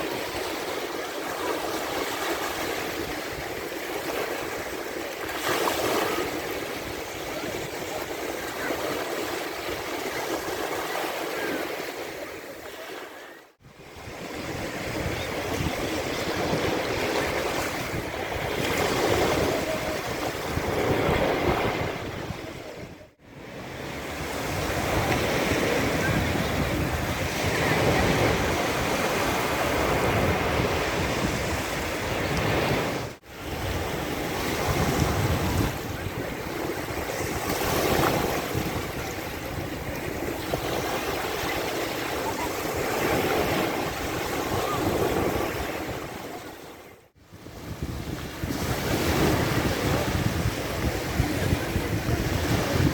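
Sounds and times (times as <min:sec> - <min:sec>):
sea waves breaking on beach: 0:00.0 - 0:52.9.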